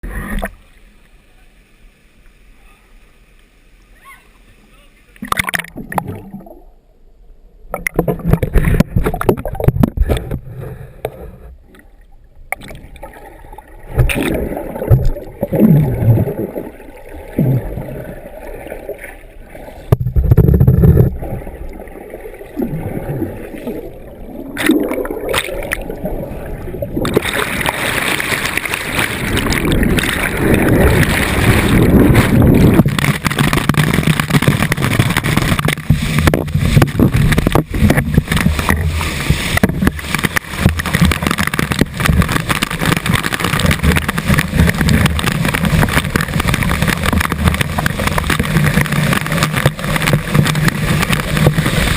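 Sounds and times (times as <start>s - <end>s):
water sloshing and gurgling: 5.2s - 6.9s, 7.6s - 51.9s.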